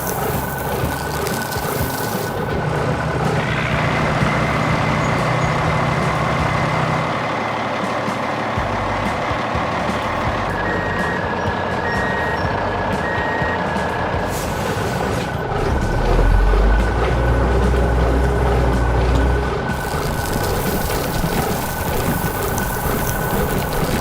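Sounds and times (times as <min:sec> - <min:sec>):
heavy vehicle engine running: 0:00.0 - 0:24.0
reversing alarm beeps: 0:10.1 - 0:14.3.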